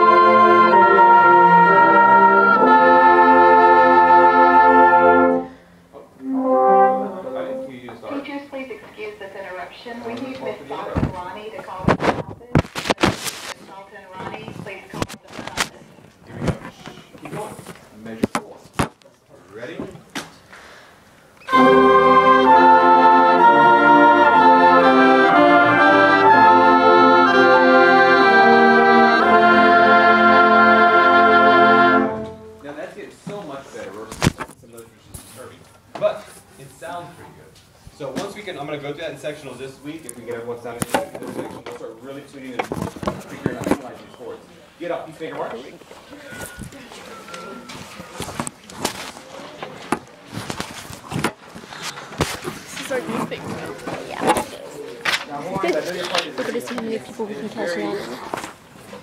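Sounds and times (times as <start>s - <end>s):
concert band sustained chords: 0.0s - 5.6s, 6.2s - 7.9s, 21.5s - 32.7s.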